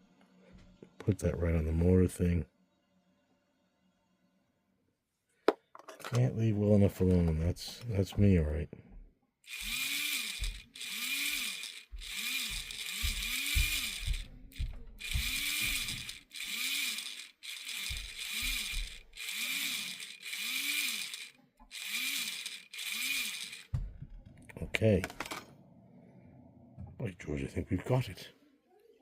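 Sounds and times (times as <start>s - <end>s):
model locomotive motor whirring: 9.5s - 23.7s.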